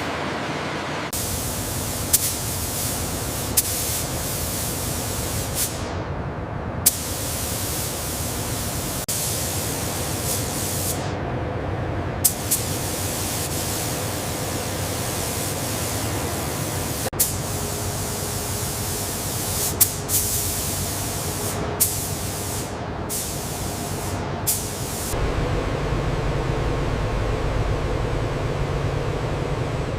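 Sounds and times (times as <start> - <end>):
steady hissing noise: 1.1 - 6.1, 6.8 - 11.2, 12.2 - 29.9
deep rushing noise: 25.2 - 29.9.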